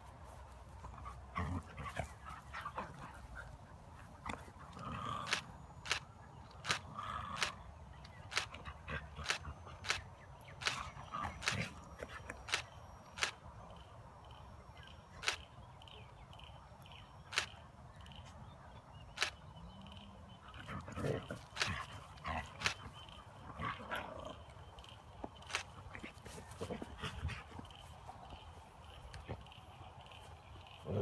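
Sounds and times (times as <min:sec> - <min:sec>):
sharp clicks: 0:05.2 - 0:16.6, 0:17.2 - 0:18.2, 0:19.1 - 0:20.1, 0:21.3 - 0:23.2, 0:24.7 - 0:26.4.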